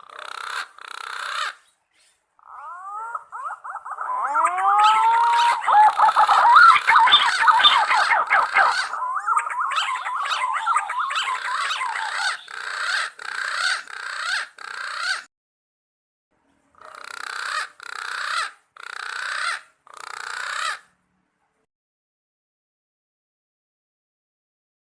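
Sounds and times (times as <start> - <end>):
pigeons calling: 0.0 - 15.3, 16.8 - 20.8.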